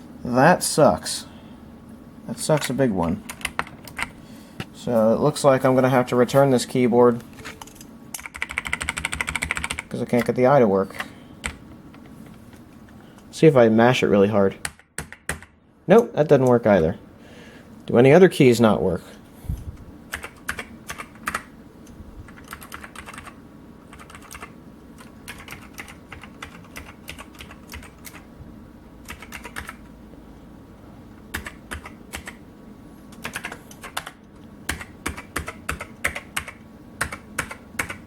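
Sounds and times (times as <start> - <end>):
clicky mechanical keyboard typing: 3.3 - 4.1, 7.6 - 10.4, 20.1 - 21.5, 22.3 - 28.3, 29.0 - 29.9, 31.3 - 32.4, 33.1 - 38.0.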